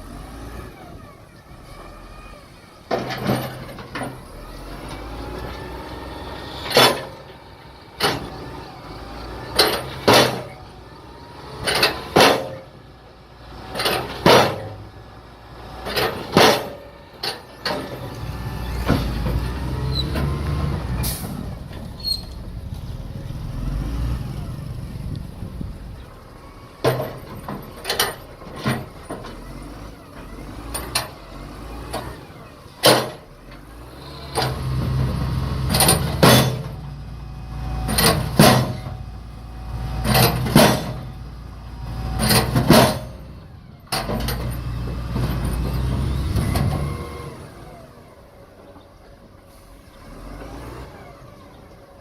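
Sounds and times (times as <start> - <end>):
diesel machinery rumbling: 0.0 - 52.0.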